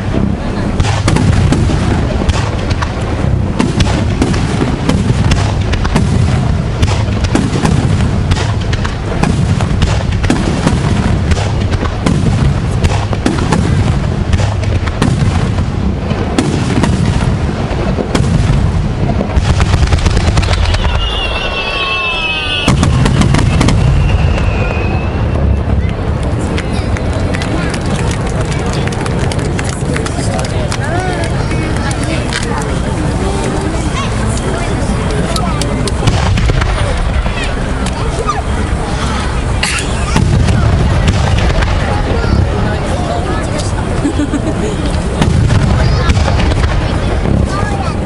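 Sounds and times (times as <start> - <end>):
steady low rumble: 0.0 - 21.4, 22.7 - 48.0
fireworks bursts and booms: 0.0 - 48.0
fireworks crackling: 0.0 - 48.0.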